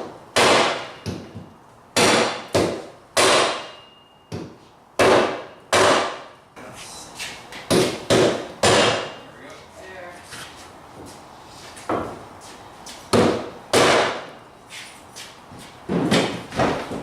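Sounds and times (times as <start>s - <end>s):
hammer striking metal: 2.0s - 4.3s, 5.0s - 6.3s, 7.7s - 9.2s.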